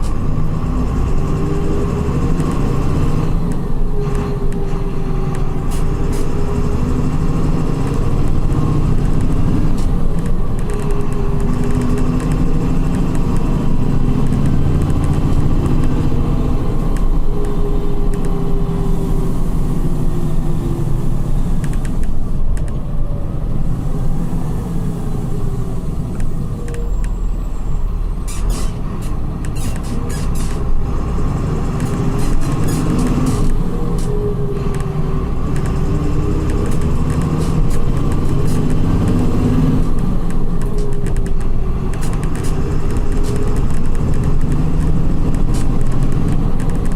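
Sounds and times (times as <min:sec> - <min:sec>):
coach engine pulling through gears: 0:00.0 - 0:46.9
sharp clicks: 0:07.7 - 0:18.5, 0:21.2 - 0:22.9, 0:31.6 - 0:46.9.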